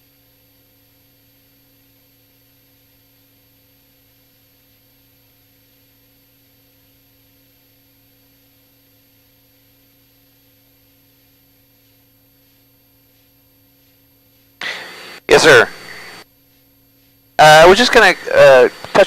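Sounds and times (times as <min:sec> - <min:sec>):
faint steady hiss: 0:14.6 - 0:16.2, 0:17.4 - 0:19.0.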